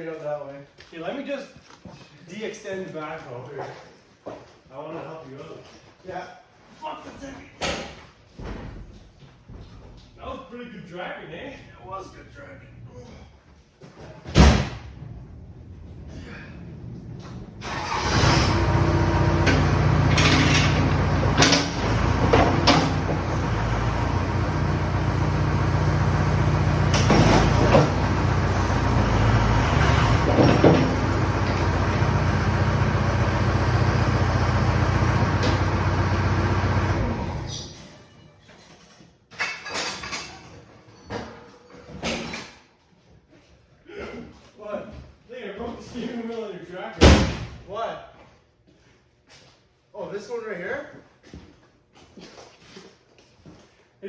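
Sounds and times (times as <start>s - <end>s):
tractor engine running: 17.6s - 37.6s
metal clanks: 19.4s - 23.3s.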